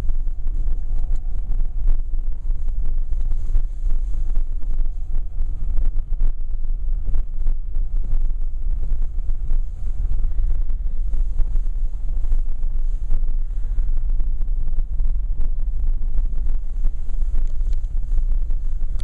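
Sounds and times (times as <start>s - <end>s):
car cabin rumble: 0.0s - 19.0s.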